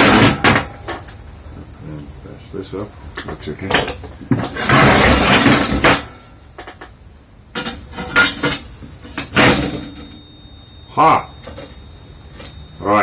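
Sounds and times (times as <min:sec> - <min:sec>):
metal scraping against metal: 0:03.6 - 0:06.4, 0:07.6 - 0:10.2
metal clinks and knocks: 0:11.3 - 0:12.7.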